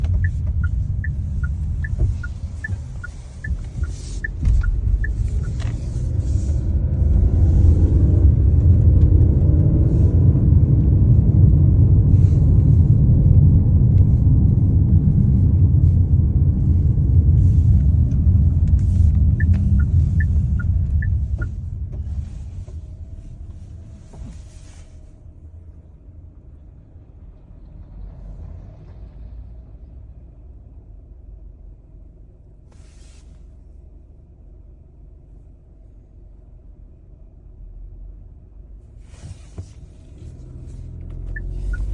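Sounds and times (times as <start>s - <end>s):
quick two-tone ticking: 0.0s - 6.2s, 17.8s - 21.6s, 41.2s - 41.9s
car road rumble: 0.0s - 41.9s.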